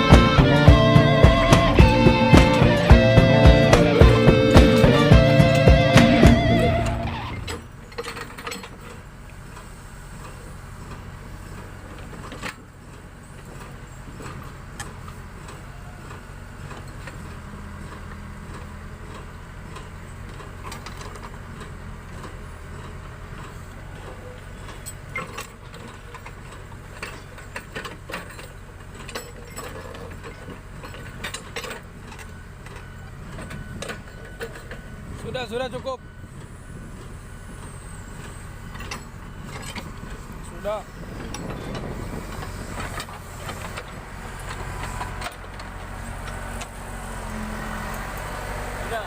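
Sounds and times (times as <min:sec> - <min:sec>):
metal clanks and knocks: 0:00.0 - 0:09.0, 0:13.5 - 0:35.3, 0:38.7 - 0:46.7
backhoe diesel engine running: 0:00.0 - 0:49.0.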